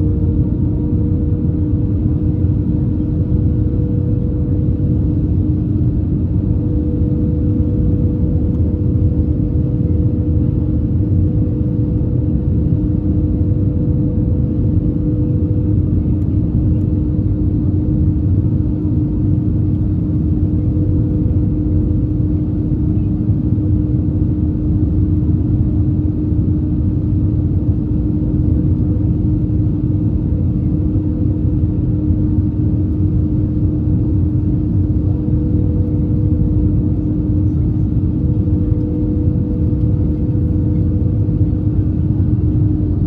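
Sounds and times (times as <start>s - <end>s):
airplane cabin engine rumble: 0.0s - 43.0s
constant low hum: 0.0s - 43.0s.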